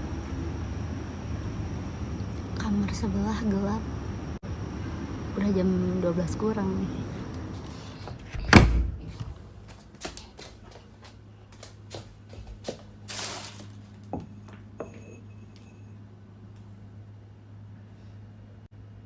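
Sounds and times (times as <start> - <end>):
low steady hum: 0.0 - 19.0
short rustle: 12.7 - 14.0.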